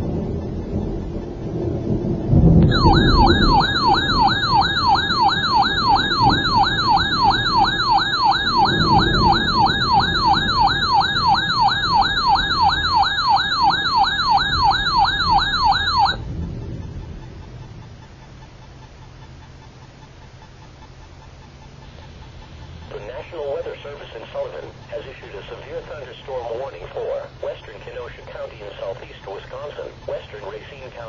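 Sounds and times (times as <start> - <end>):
rain and thunder rumble: 0.0 - 19.2
electronic siren alert tone: 2.5 - 16.3.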